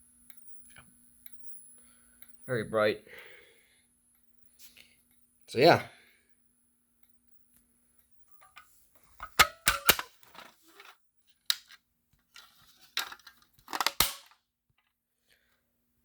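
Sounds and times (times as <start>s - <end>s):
plastic and metal clicks: 8.4s - 10.5s, 13.0s - 14.4s.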